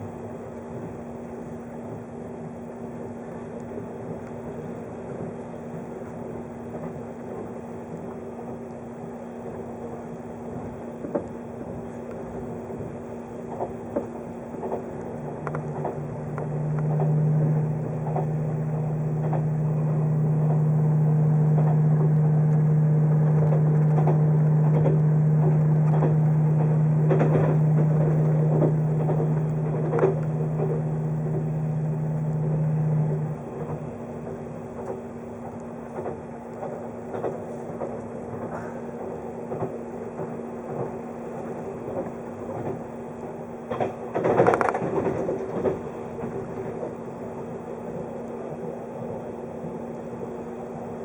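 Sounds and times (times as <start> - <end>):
strong low steady hum: 0.0 - 51.0
train rumble and hum: 0.0 - 51.0.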